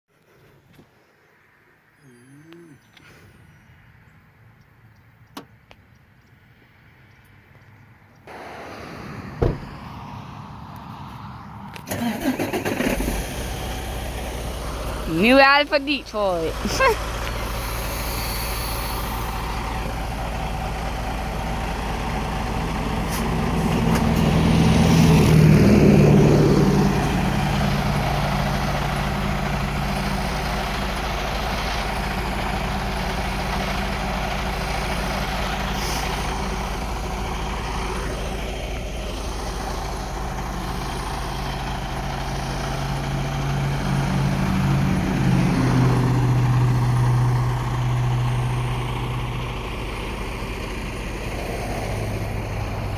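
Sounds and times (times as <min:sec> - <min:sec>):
heavy truck engines passing: 0:06.1 - 0:52.9
steady engine drone: 0:11.4 - 0:52.9.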